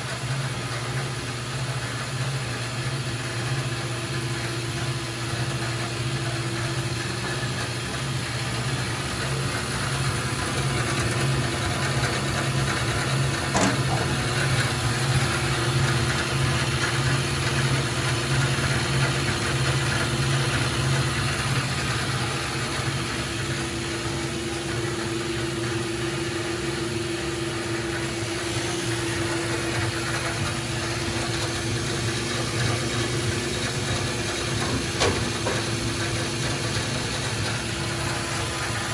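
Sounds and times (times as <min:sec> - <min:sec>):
band saw motor and blade hum: 0:08.6 - 0:26.2.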